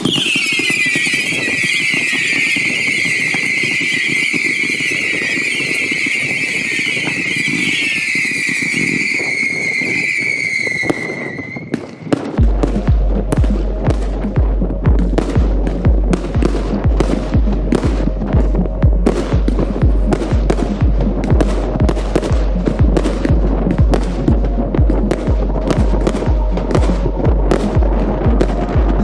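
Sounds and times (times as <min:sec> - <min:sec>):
firework whistling: 0:00.0 - 0:14.4
crackling: 0:11.0 - 0:29.0
low thumping beat: 0:12.1 - 0:29.0.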